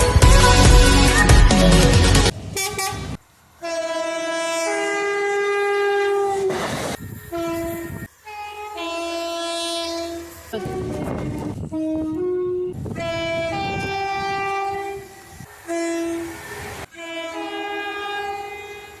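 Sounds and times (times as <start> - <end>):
electronic music: 0.0 - 3.0
train air horn blasts: 2.5 - 19.0.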